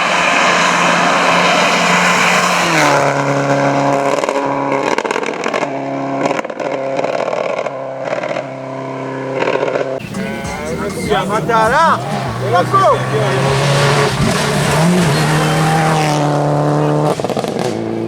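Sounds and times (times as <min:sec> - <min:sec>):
rally car engine at full throttle: 0:00.0 - 0:18.0
engine crackles: 0:09.3 - 0:18.0.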